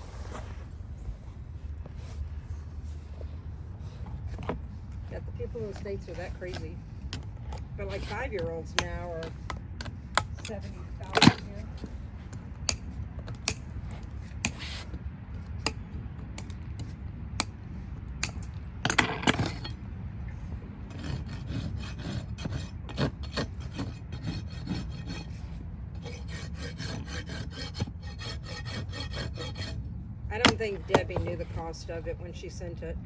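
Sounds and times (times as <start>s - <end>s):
rasp filing a hoof: 4.0s - 15.0s, 20.8s - 32.0s.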